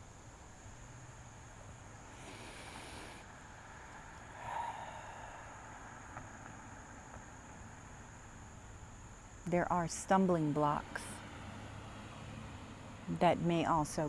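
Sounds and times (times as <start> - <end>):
short hiss: 2.1 - 3.3.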